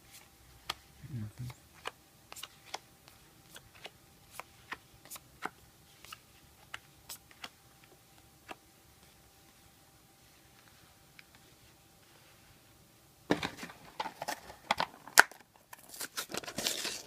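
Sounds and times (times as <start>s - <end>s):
cards clicking and snapping: 1.4s - 7.6s.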